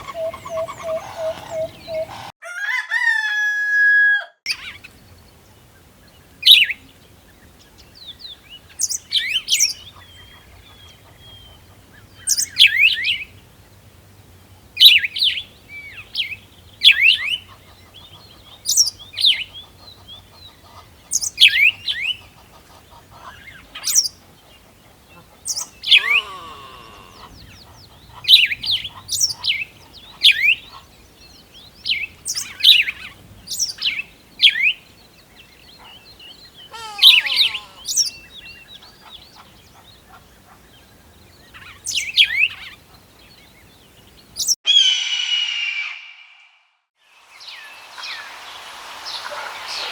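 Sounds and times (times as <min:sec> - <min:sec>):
bird calling sharp notes: 0:00.0 - 0:02.3, 0:25.6 - 0:29.0, 0:36.6 - 0:38.3, 0:44.7 - 0:46.7.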